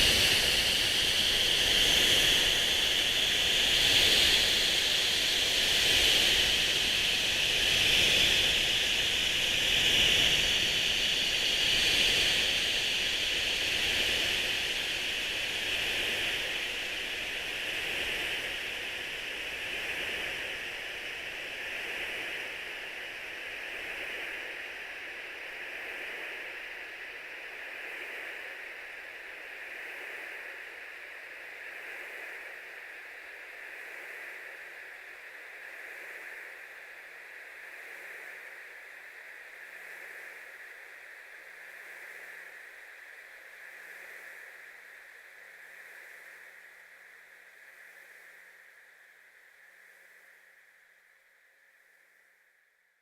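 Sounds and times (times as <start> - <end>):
steady high hiss: 0.0 - 40.8.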